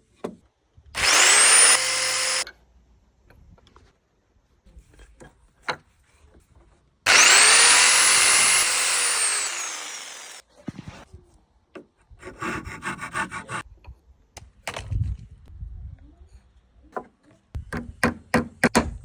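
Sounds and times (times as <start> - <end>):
electric saw cutting wood: 1.0 - 2.4, 7.1 - 10.4
rasping strokes on wood: 12.2 - 13.6.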